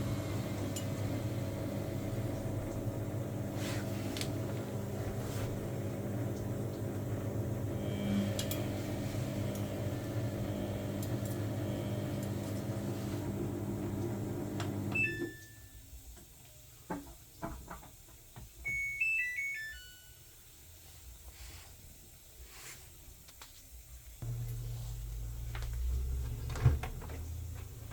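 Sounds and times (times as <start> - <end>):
washing machine hum: 0.0 - 20.1, 24.2 - 27.9
beep: 15.0 - 15.6, 18.7 - 20.0.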